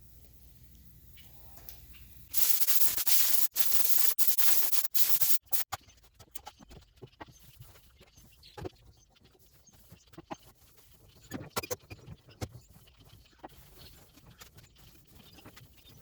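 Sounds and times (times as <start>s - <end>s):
compressed air blow gun hissing: 2.3s - 5.6s.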